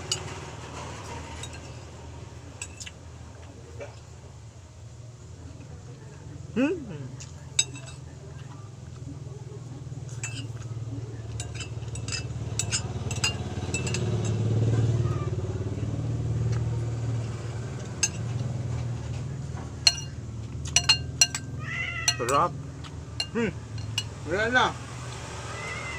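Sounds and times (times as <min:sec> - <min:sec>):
cutlery clinking on a plate: 0:00.0 - 0:01.9, 0:07.6 - 0:08.1, 0:10.1 - 0:14.5, 0:17.8 - 0:19.2, 0:19.8 - 0:22.5, 0:23.2 - 0:24.2
passing vehicle engine rumble: 0:00.0 - 0:25.9.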